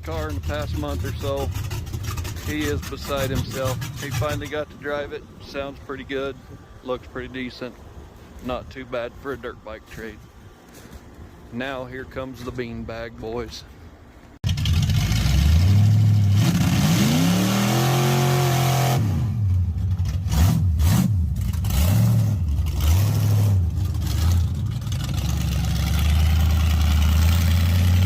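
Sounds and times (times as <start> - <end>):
car engine revving: 14.4 - 28.0.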